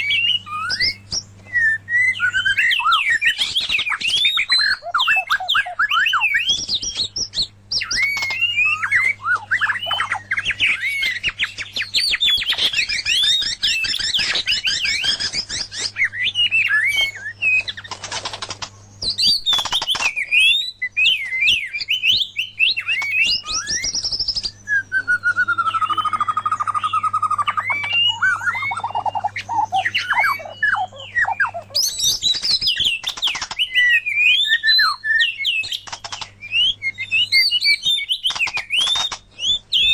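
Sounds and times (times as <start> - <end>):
birds singing whistled phrases: 0.0 - 39.9
steady low hum: 23.2 - 35.2.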